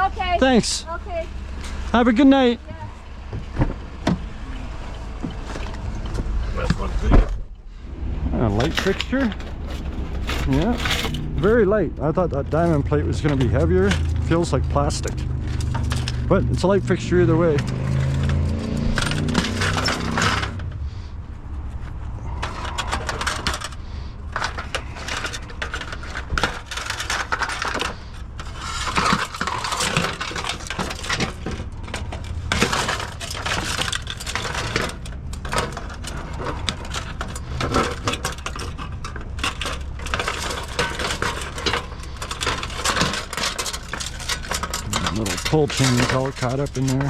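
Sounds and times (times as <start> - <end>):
small metal parts clinking: 8.7 - 20.7, 22.2 - 47.0.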